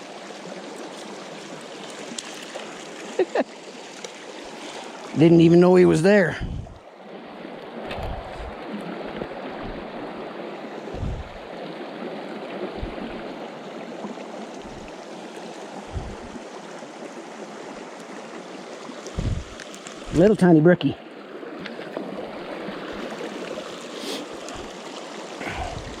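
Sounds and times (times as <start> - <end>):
creek running over rocks: 0.0 - 26.0
short low thumps: 6.3 - 6.8, 7.9 - 8.6, 9.6 - 9.9, 11.0 - 11.4, 12.8 - 13.2, 14.6 - 14.9, 15.9 - 16.4, 19.2 - 20.2, 25.4 - 26.0.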